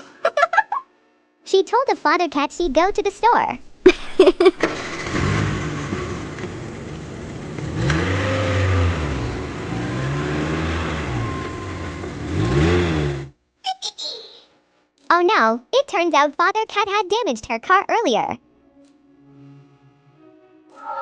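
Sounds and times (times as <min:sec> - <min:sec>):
car engine revving: 0:04.4 - 0:13.4.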